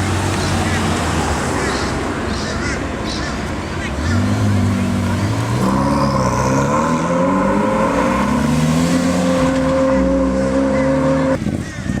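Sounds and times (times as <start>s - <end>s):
car engine at high revs: 3.8s - 11.4s.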